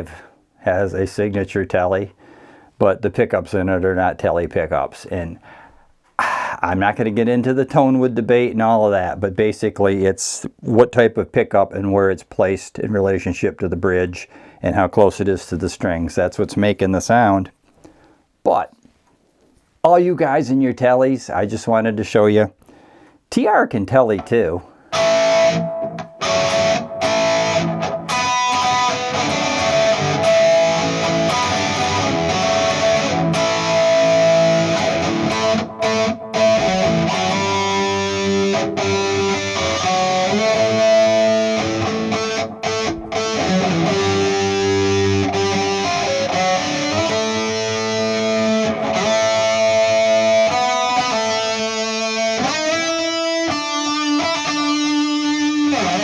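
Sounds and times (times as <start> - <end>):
electric guitar through amplifier: 24.9 - 56.0.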